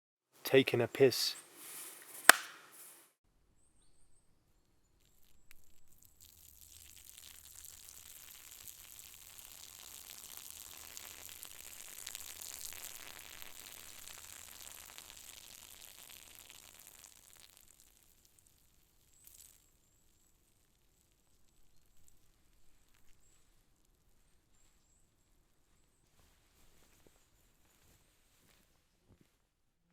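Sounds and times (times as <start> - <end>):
faint rustles: 1.4 - 3.1
urine stream splashing on ground: 5.9 - 19.7.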